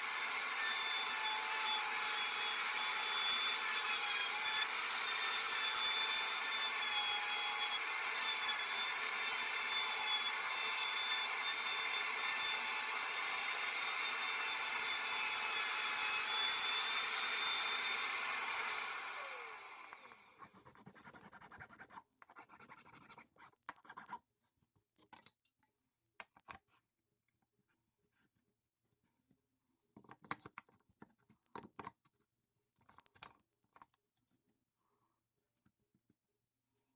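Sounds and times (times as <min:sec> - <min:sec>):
power tool rasping wood: 0:00.0 - 0:20.4.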